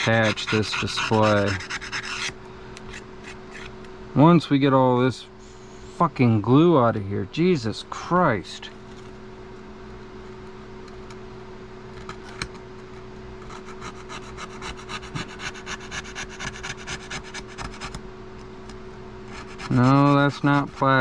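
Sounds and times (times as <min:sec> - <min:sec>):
tool scraping adhesive: 0:00.0 - 0:02.3, 0:19.3 - 0:21.0
steady low hum: 0:00.0 - 0:21.0.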